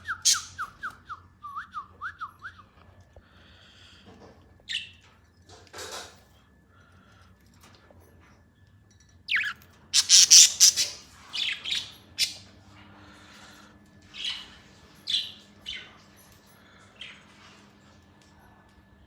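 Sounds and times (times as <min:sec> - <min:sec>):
budgerigars squawking and chirping: 0:00.2 - 0:00.6, 0:09.3 - 0:12.4.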